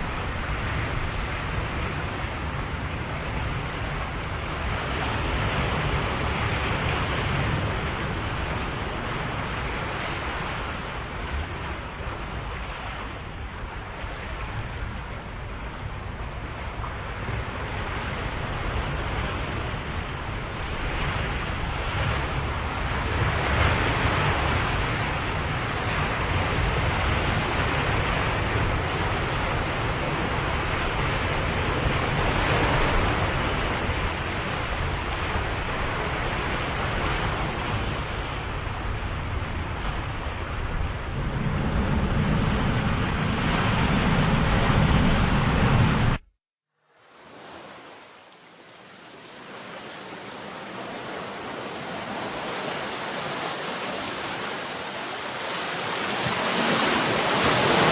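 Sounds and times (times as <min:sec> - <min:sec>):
ocean waves breaking: 0:00.0 - 0:46.3, 0:47.0 - 0:57.9.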